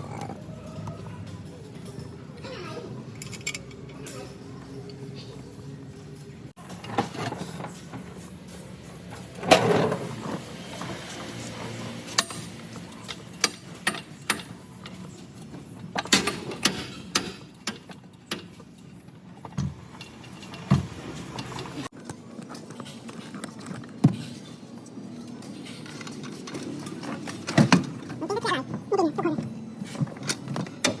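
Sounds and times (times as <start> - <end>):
metal tools clanking: 3.0 - 8.0, 12.1 - 21.9.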